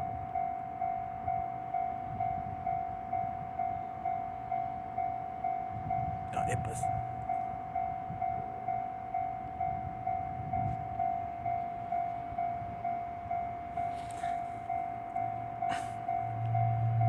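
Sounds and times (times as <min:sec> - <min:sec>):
level crossing warning bell: 0:00.0 - 0:17.0.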